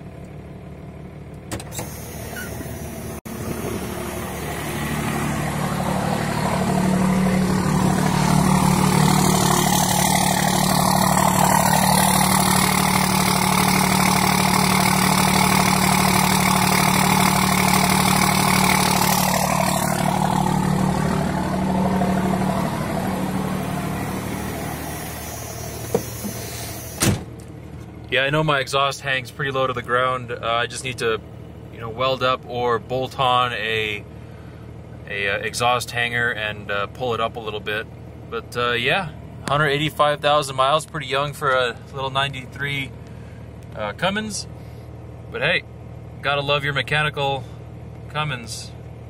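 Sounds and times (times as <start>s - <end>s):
diesel engine idling: 0.0s - 49.0s.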